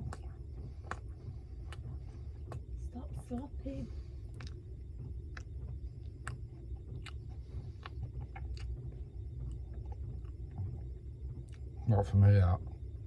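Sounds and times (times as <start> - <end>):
person chewing with wet smacks: 0.0 - 3.5, 4.2 - 11.8
steady low hum: 0.0 - 13.0.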